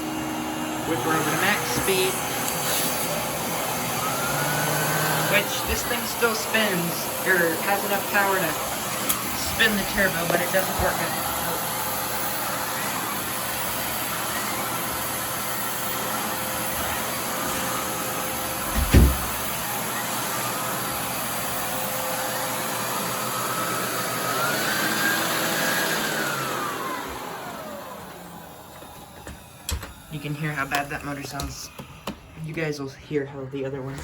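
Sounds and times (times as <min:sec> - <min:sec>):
upright vacuum cleaner running: 0:00.0 - 0:33.0
thump: 0:18.7 - 0:19.4.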